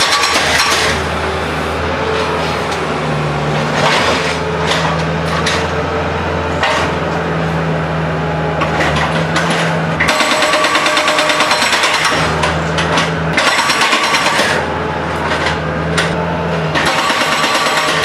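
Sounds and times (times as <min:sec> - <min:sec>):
engine running: 0:00.0 - 0:18.0
concrete breaker hammering: 0:08.6 - 0:14.7, 0:16.7 - 0:18.0.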